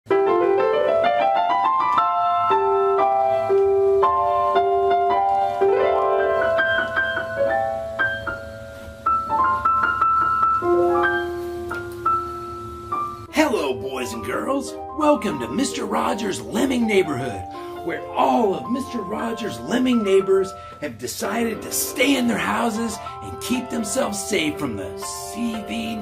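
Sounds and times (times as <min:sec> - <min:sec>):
solo piano music: 0:00.1 - 0:26.0.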